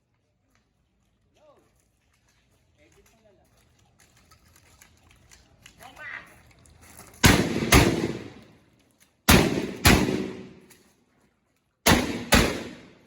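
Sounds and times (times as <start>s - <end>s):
shotgun shots with reverberant tail: 7.2s - 8.5s, 9.3s - 10.7s, 11.9s - 13.0s.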